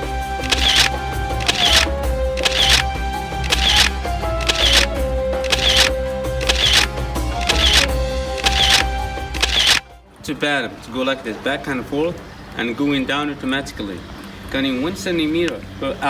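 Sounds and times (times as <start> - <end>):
low bass: 0.0 - 10.0
steady beat: 0.0 - 10.0
sliding melody line: 0.0 - 10.2.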